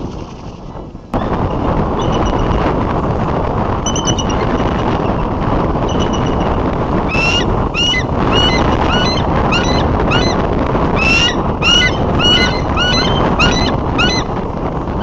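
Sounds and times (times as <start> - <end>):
wind noise on microphone: 0.0 - 15.0
eagle chatter calls: 5.8 - 14.4.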